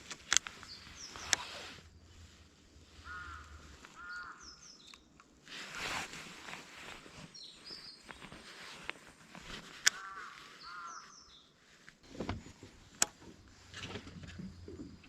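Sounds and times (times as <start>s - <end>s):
small birds chirping: 0.0s - 15.0s
crow cawing: 3.0s - 4.6s, 9.9s - 11.4s.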